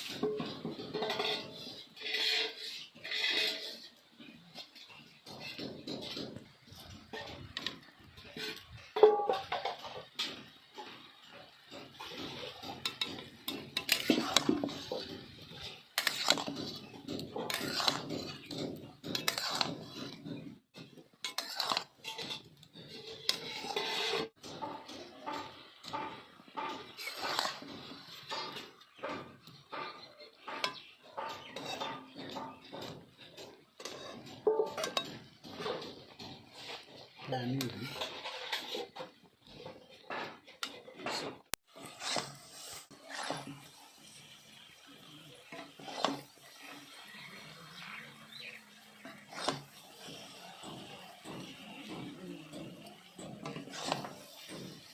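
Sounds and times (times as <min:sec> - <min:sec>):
metal utensils clinking on cookware: 0:00.0 - 0:54.9.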